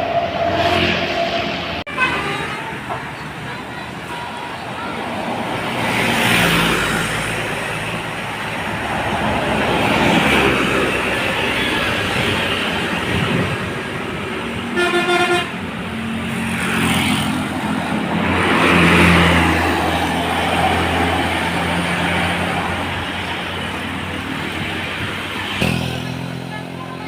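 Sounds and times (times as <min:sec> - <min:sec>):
heavy road traffic: 0:00.0 - 0:27.0
bus horn blast: 0:01.9 - 0:05.2, 0:14.7 - 0:15.7
large vehicle passing: 0:04.6 - 0:14.8, 0:15.5 - 0:27.0.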